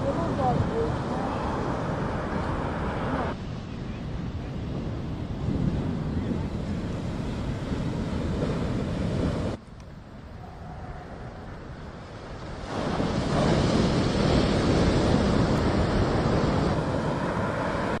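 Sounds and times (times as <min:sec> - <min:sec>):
wind on microphone: 0:00.0 - 0:18.0
surf: 0:10.4 - 0:18.0.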